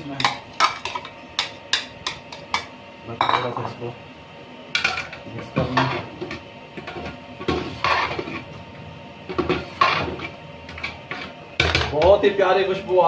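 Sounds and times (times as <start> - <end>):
metal spoon scraping a pot: 6.9 - 8.6, 9.3 - 11.4.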